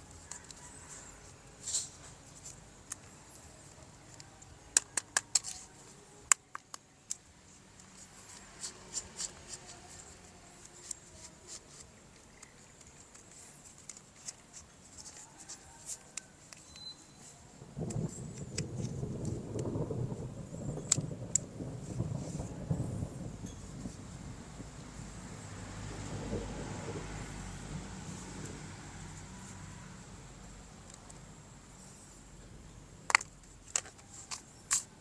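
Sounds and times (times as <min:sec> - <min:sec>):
plastic toy parts clicking: 0:03.7 - 0:07.2, 0:07.8 - 0:16.9, 0:33.1 - 0:35.0.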